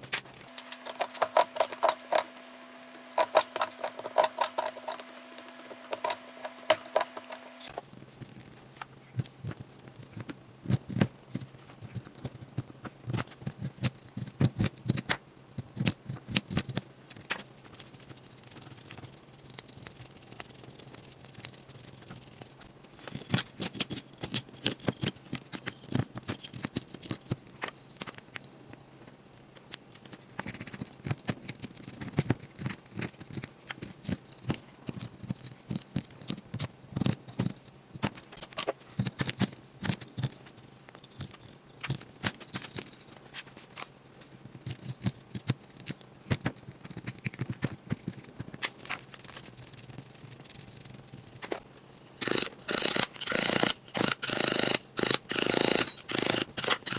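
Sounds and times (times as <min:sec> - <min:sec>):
tool scraping plaster: 0:00.4 - 0:07.8, 0:52.2 - 0:56.9.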